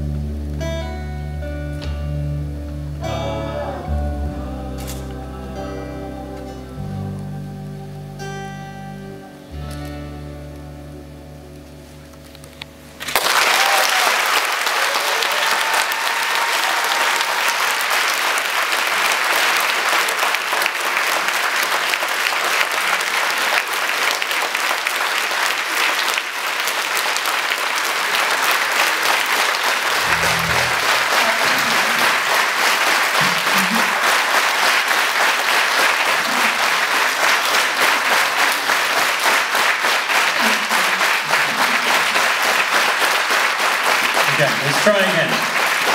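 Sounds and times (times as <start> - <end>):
acoustic guitar chord strummed: 0.0 - 12.4, 29.9 - 33.5
audience applause: 13.0 - 45.9.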